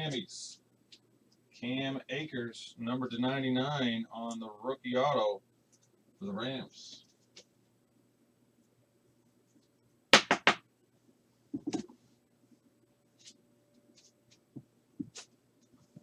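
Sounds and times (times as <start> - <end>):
sharp taps on table: 10.2 - 10.6.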